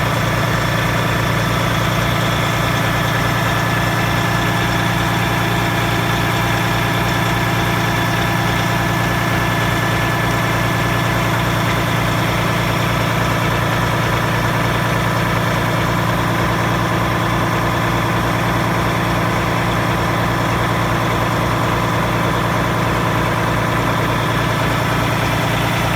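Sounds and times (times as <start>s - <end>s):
diesel engine idling: 0.0s - 25.9s.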